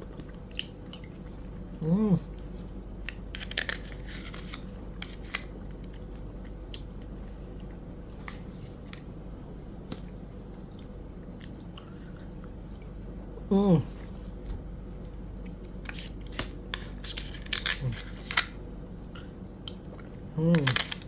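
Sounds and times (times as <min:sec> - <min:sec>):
person chewing: 0:00.0 - 0:09.1, 0:14.0 - 0:21.0
steady background hum: 0:00.0 - 0:21.0.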